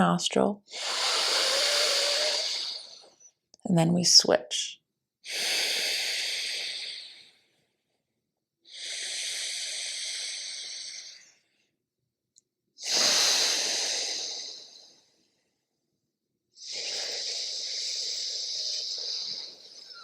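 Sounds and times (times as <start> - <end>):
breathing through nostril: 0.6 - 3.3, 5.2 - 7.5, 8.7 - 11.4, 12.8 - 15.1, 16.6 - 20.0.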